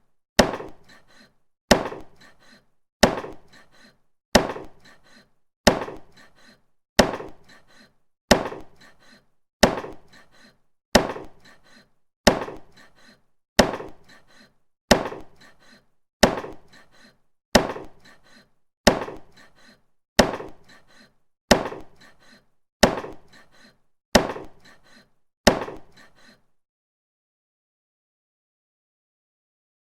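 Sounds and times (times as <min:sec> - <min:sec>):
cleaver chopping meat: 0:00.4 - 0:01.0, 0:01.7 - 0:02.4, 0:03.0 - 0:03.7, 0:04.4 - 0:05.0, 0:05.7 - 0:06.4, 0:07.0 - 0:07.6, 0:08.3 - 0:09.0, 0:09.6 - 0:10.3, 0:11.0 - 0:11.6, 0:12.3 - 0:12.9, 0:13.6 - 0:14.0, 0:14.9 - 0:15.6, 0:16.2 - 0:16.9, 0:17.6 - 0:18.2, 0:18.9 - 0:19.6, 0:20.2 - 0:20.8, 0:21.5 - 0:22.1, 0:22.8 - 0:23.3, 0:24.2 - 0:24.6, 0:25.5 - 0:26.0.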